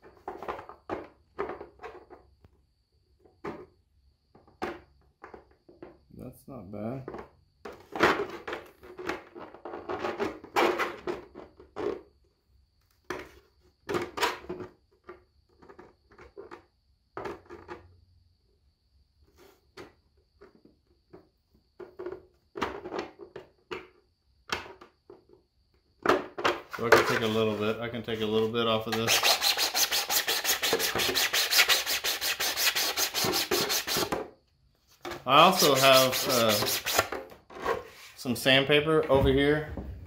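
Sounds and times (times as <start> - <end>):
hard plastic knocks and scrapes: 0.0 - 2.2, 38.9 - 40.0.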